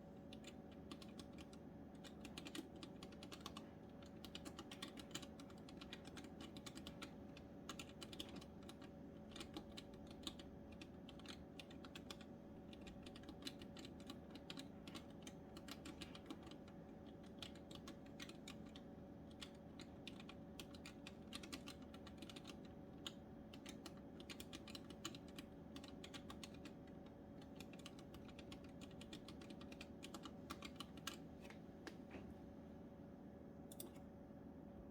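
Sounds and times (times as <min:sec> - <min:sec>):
faint steady hum: 0:00.0 - 0:34.9
keyboard key clicks: 0:33.7 - 0:34.0.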